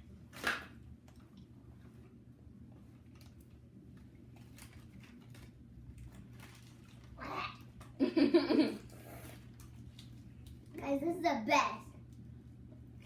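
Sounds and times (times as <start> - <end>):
low room hum: 0.0 - 13.0
child laughing: 8.0 - 8.9.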